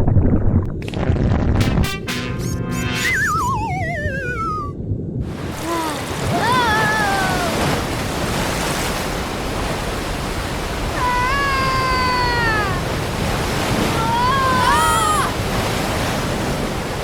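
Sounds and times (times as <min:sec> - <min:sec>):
rushing water: 0:05.2 - 0:17.0.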